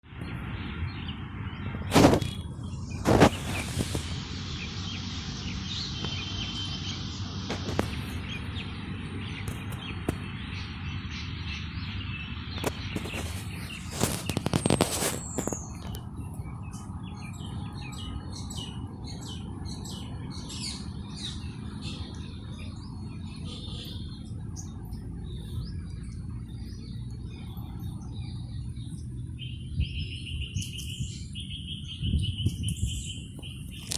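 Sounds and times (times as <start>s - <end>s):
small birds chirping: 0.1s - 33.9s
low background rumble: 0.2s - 33.9s.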